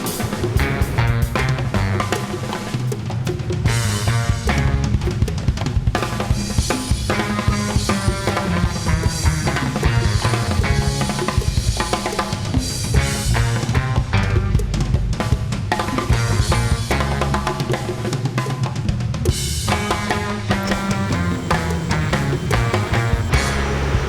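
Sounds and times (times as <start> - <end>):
music with drum kit beat: 0.0 - 24.0
heavy bass line: 0.4 - 2.2, 3.6 - 5.3, 7.1 - 11.7, 12.9 - 17.6, 19.7 - 24.0.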